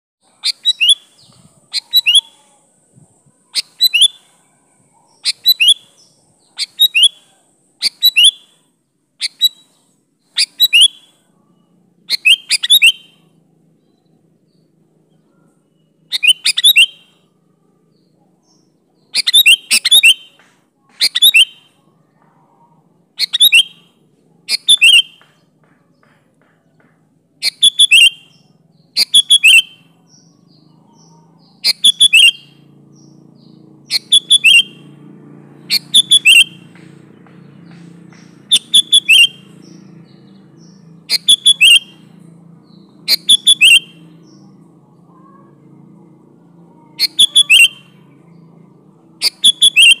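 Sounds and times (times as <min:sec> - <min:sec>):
bird chirping: 0:00.2 - 0:50.0
faint low hum: 0:11.0 - 0:19.2.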